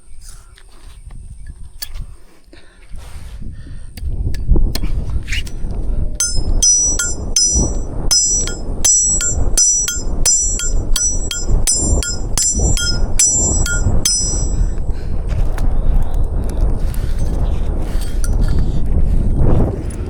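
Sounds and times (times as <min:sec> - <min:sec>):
hammer striking metal nail: 0:06.2 - 0:14.8.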